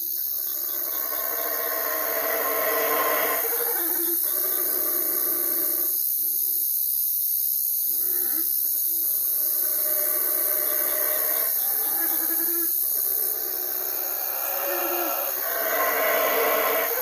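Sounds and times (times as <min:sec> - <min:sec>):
steady loud hiss: 0:00.0 - 0:17.0
owl hooting: 0:13.0 - 0:17.0.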